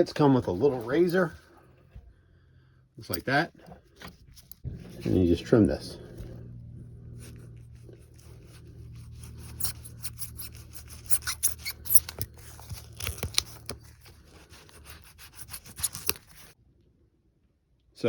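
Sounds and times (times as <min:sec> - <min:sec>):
steady low hum: 0:00.6 - 0:15.6
razor blade scraping rubber: 0:07.0 - 0:16.6.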